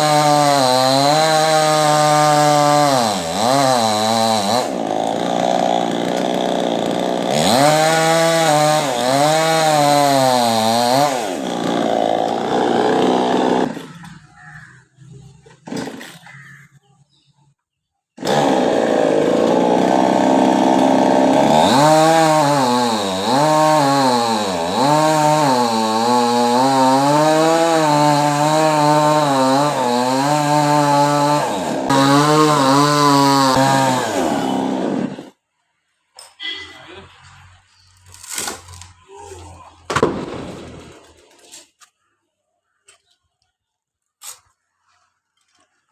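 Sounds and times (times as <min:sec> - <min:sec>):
chainsaw cutting wood: 0:00.0 - 0:14.1, 0:15.6 - 0:16.2, 0:18.2 - 0:35.4.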